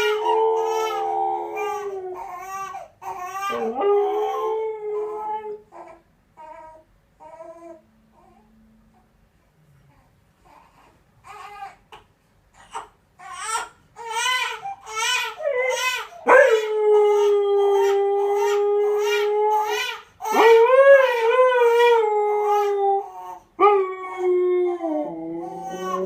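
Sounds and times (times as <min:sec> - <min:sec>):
dog howling: 0:00.0 - 0:02.2, 0:03.4 - 0:05.6, 0:15.2 - 0:26.0.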